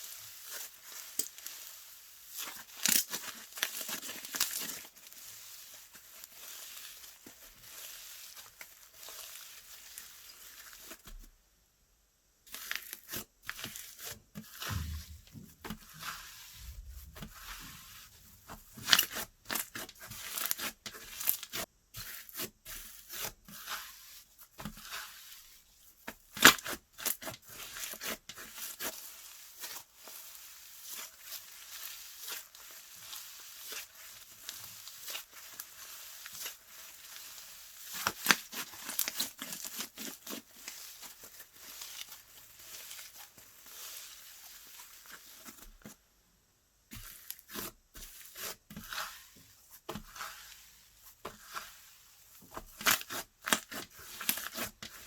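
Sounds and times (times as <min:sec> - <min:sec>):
sticky slime crackles and pops: 0:14.7 - 0:21.6.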